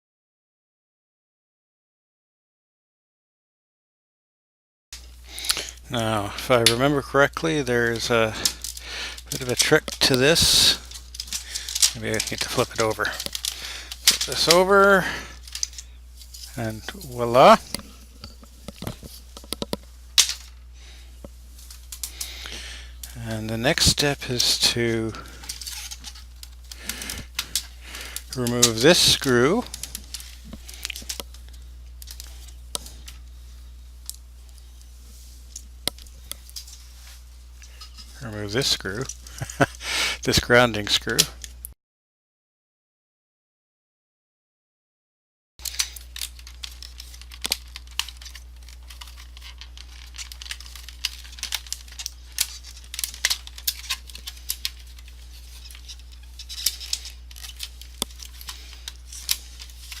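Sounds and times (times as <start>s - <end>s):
low steady hum: 5.0s - 41.8s, 45.6s - 60.0s
keyboard parts clicking and rattling: 8.2s - 15.8s, 45.6s - 60.0s.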